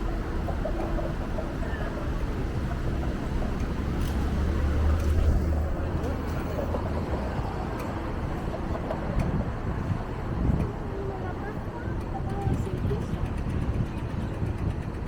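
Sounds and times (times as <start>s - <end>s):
heavy low rumble: 0.0s - 6.0s
traffic: 0.0s - 15.0s
voices of passers-by: 0.0s - 15.0s
wind buffeting microphone: 0.0s - 15.0s.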